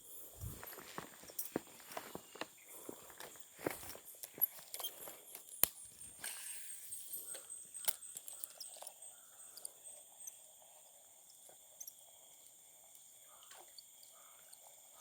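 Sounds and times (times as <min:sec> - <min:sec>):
high insect drone: 0:00.0 - 0:15.0
rustles: 0:00.2 - 0:05.6.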